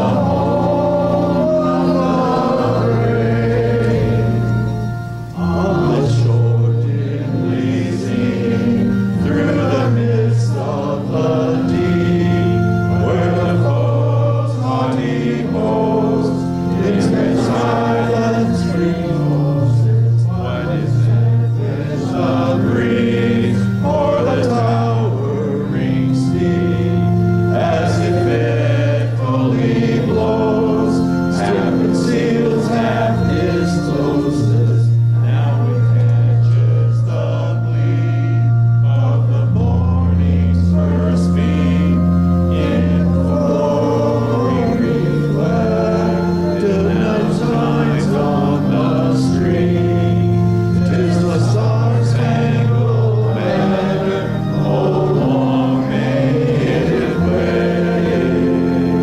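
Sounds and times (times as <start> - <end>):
congregation singing a hymn: 0.0 - 59.0
instrumental accompaniment: 0.0 - 59.0.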